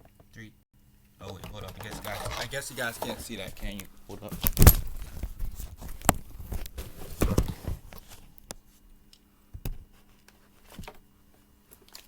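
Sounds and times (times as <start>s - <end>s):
objects knocking and rustling: 1.2s - 8.6s, 9.6s - 11.1s.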